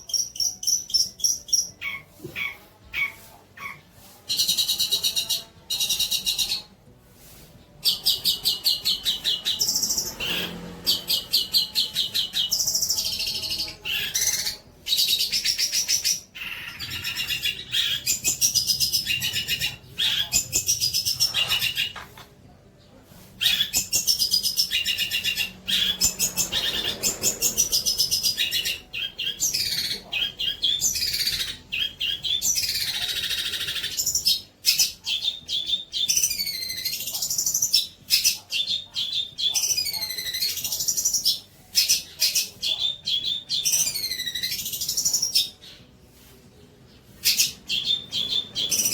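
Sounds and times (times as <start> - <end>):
songbird singing trills: 0.0 - 6.7.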